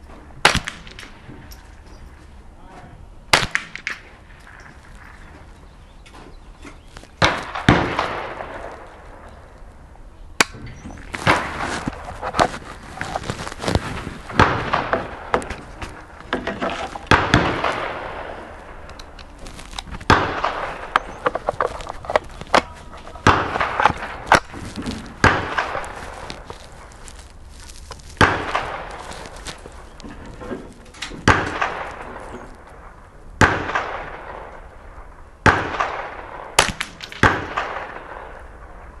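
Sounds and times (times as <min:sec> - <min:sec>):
rifle shots echoing: 0:03.3 - 0:05.2, 0:07.2 - 0:09.5, 0:14.3 - 0:26.2, 0:31.0 - 0:39.0.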